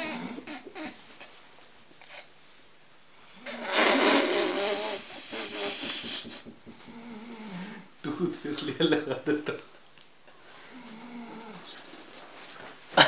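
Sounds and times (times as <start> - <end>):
man snoring: 3.5 - 6.1, 6.7 - 7.9, 10.7 - 11.6.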